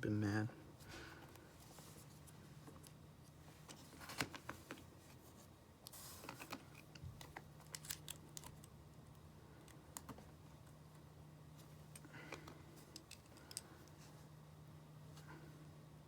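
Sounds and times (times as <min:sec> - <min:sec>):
low steady hum: 0:00.0 - 0:16.0
small clicks and taps of repair tools: 0:12.4 - 0:14.0.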